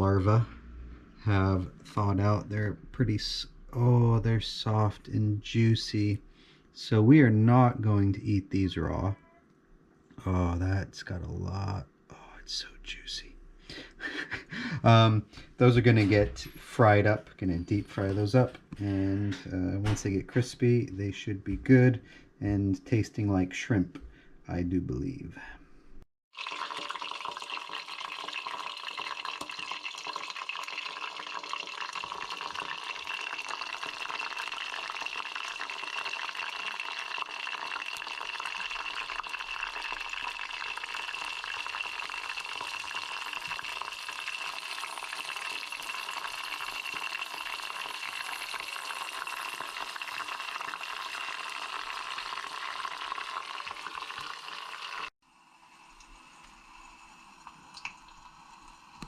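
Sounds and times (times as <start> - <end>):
larvae sizzling in hot oil: 26.3 - 55.1.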